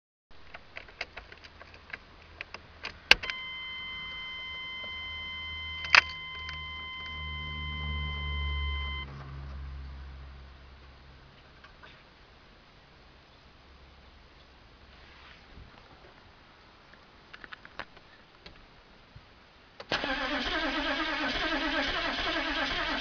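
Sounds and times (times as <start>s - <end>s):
in-cab warning chime: 3.3s - 9.1s
diesel engine cranking: 19.8s - 23.0s.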